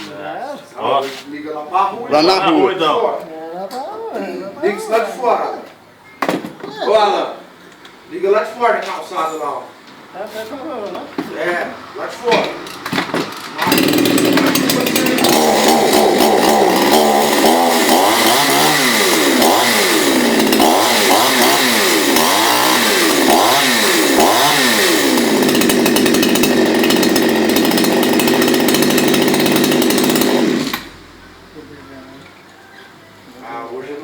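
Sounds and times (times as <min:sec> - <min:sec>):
chainsaw running at high speed: 0:13.6 - 0:31.0.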